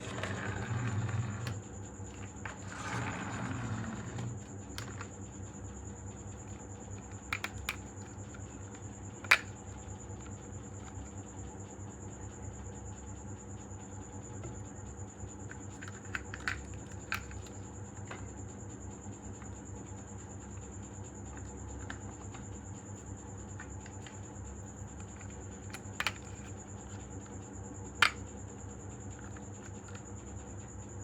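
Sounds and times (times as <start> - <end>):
marbles rolling rumble: 0.0 - 5.1.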